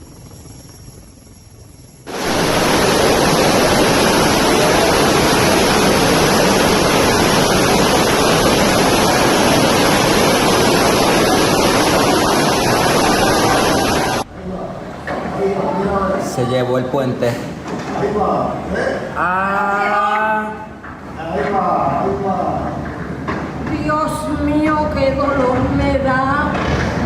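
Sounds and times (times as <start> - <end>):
floodwater rushing roar: 2.1 - 14.3.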